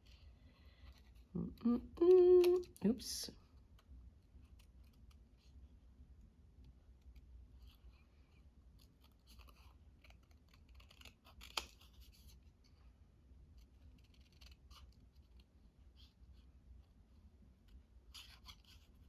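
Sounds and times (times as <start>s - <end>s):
scissors cutting paper: 8.8s - 12.4s, 13.6s - 15.4s.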